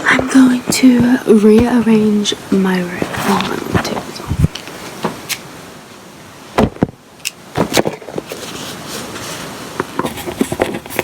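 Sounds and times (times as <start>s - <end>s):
sharp knocks and thumps: 0.0s - 2.3s, 6.6s - 8.4s
rustling: 0.0s - 5.5s, 6.6s - 11.0s.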